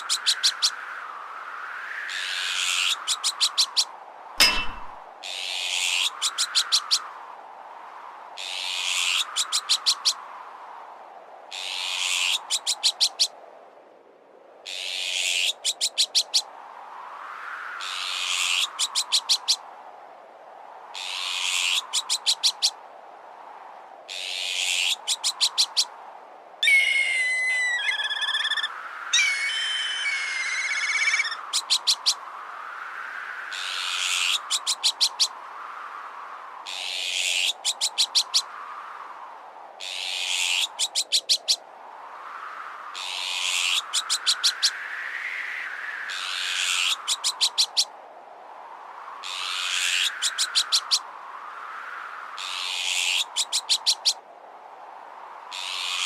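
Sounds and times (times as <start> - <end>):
wind noise: 0.0 - 56.0
harsh high bird call: 26.6 - 32.0
wavering whistled bird call: 26.6 - 32.1.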